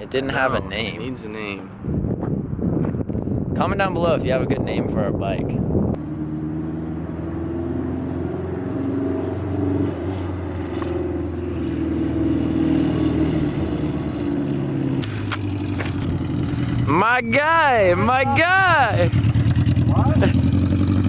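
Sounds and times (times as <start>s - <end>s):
motorcycle engine running: 9.3s - 17.2s, 18.0s - 21.0s.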